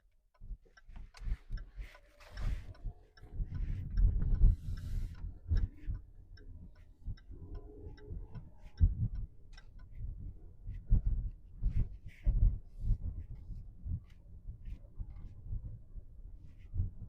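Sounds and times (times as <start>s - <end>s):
turn signal ticking: 0.0s - 12.0s
low rumble: 0.3s - 17.0s.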